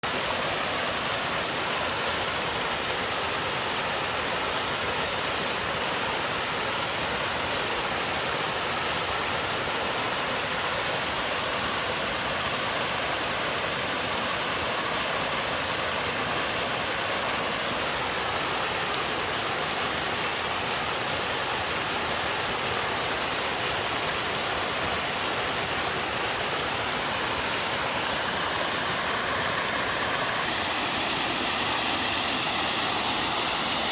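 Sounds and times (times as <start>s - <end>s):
waterfall pouring over rock: 0.0s - 33.9s.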